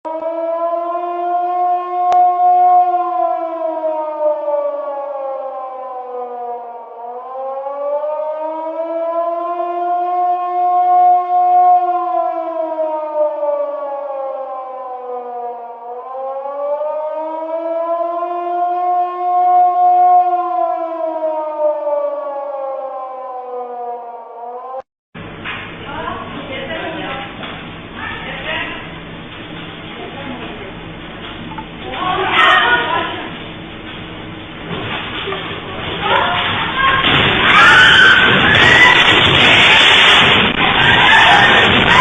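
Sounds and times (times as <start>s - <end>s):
siren wailing: 0.0s - 24.9s, 31.5s - 33.3s, 36.0s - 42.0s.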